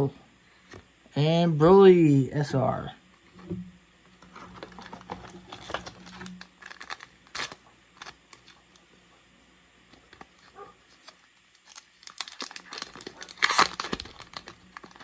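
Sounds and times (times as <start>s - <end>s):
foil wrapper crinkling: 4.2s - 8.8s, 10.0s - 15.0s.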